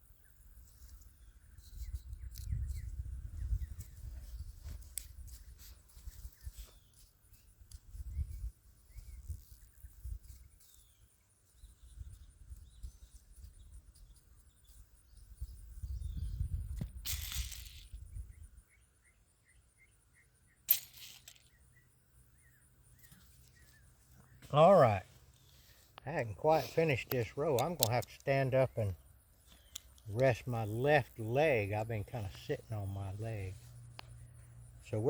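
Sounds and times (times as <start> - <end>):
bird chirping: 0.0 - 4.7, 8.0 - 16.8, 18.0 - 35.0
sharp scraping noises: 20.7 - 21.5.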